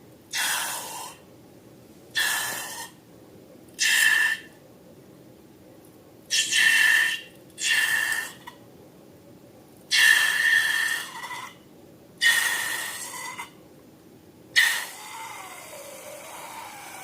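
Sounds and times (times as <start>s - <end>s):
air hissing from balloon with squeal: 14.6s - 17.0s.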